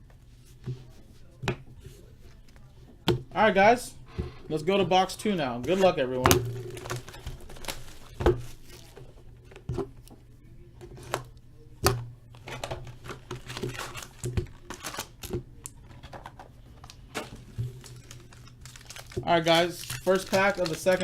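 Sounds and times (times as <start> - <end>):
hands handling cards and packs: 5.6 - 10.2, 12.3 - 21.0.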